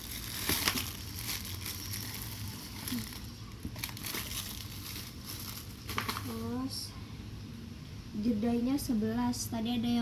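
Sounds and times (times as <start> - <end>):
packaging crackles: 0.0 - 6.5
packaging rustling and crinkling: 0.0 - 6.6.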